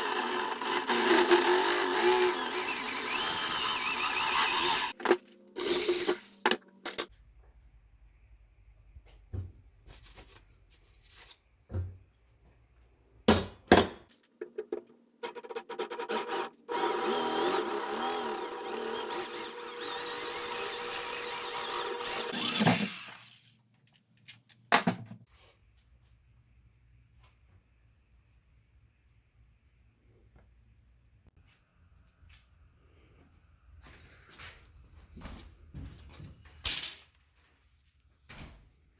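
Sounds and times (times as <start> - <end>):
small motor running: 0.0 - 5.0, 16.2 - 23.5.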